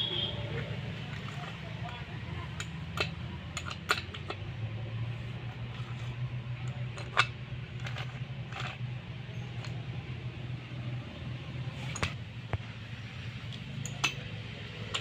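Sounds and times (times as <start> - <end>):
metal parts clinking: 1.0 - 4.4, 5.6 - 9.8, 11.8 - 12.2, 13.8 - 15.0.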